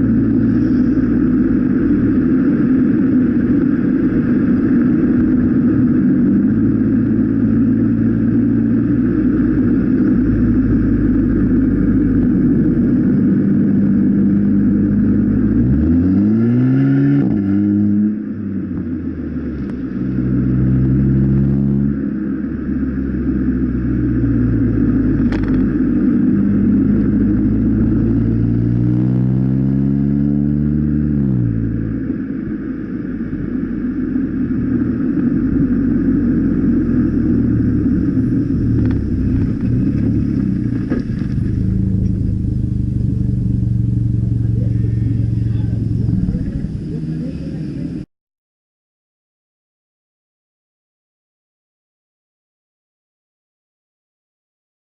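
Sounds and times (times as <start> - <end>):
car engine revving: 0.0 - 48.1.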